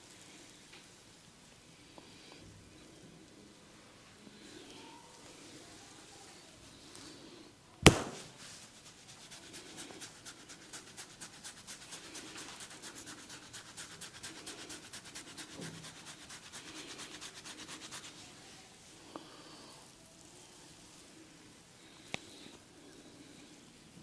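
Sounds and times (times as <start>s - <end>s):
hands striking head: 7.8s - 8.3s
loud sharp crack: 7.8s - 8.4s.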